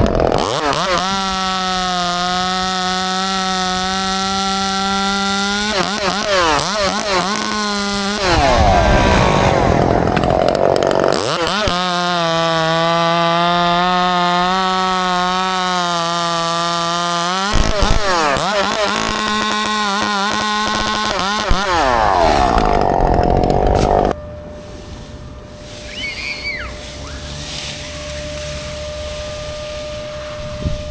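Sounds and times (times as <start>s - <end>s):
chainsaw cutting wood: 0.0s - 24.2s.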